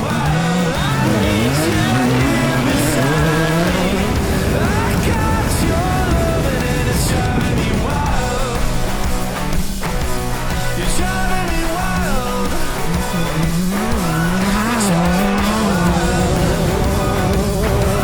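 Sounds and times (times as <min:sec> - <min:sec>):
background music: 0:00.0 - 0:18.0
race car engine revving: 0:00.0 - 0:18.0.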